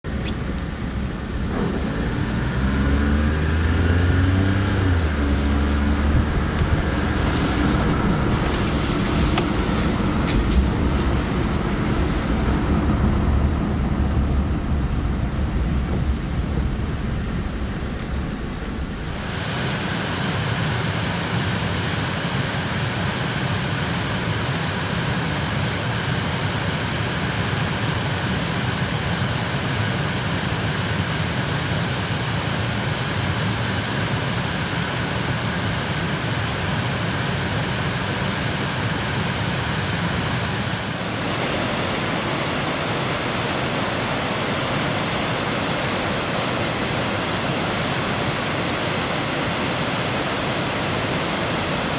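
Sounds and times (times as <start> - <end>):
river rushing loudly: 1.4 - 25.1, 37.6 - 51.9.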